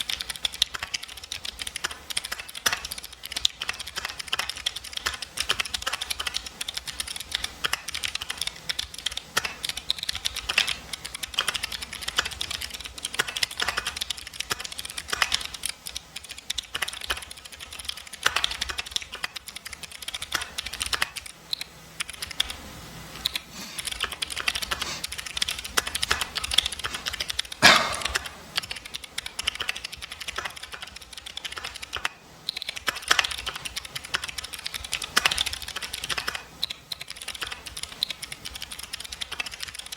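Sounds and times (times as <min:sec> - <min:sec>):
fast typing on mechanical keyboard: 0:00.0 - 0:22.6, 0:23.2 - 0:27.6, 0:28.2 - 0:39.9.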